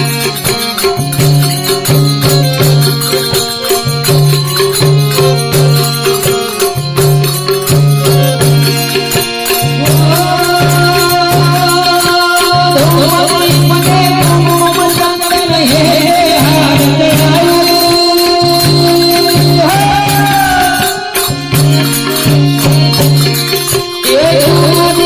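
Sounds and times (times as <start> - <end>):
harmonium notes: 0.0 - 25.0
jingling percussion: 0.0 - 25.0
person singing: 8.0 - 25.0.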